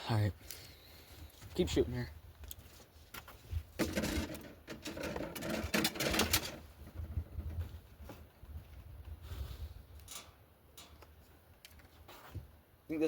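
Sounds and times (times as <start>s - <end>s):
archery gear clicks and rattles: 3.8s - 6.6s.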